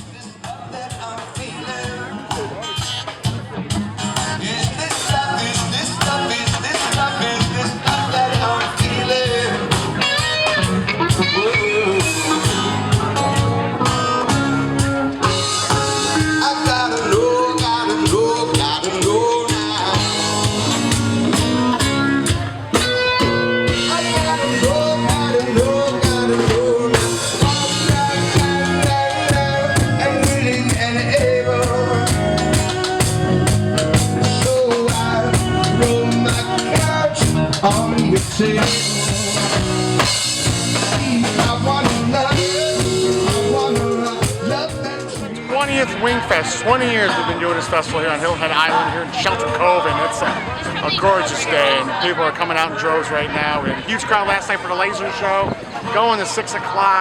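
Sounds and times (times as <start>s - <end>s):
drum kit: 0.0s - 49.0s
guitar: 0.0s - 57.0s
person singing: 4.0s - 21.9s, 23.2s - 46.1s.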